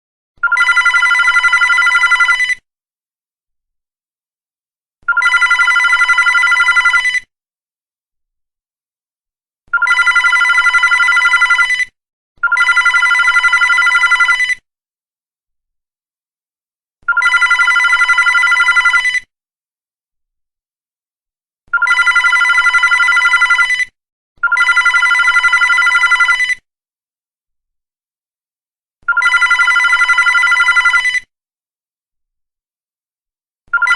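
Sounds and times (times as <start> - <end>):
landline telephone ringing: 0.4 - 2.6, 5.1 - 7.2, 9.8 - 11.8, 12.4 - 14.5, 17.1 - 19.1, 21.8 - 23.8, 24.4 - 26.5, 29.1 - 31.2.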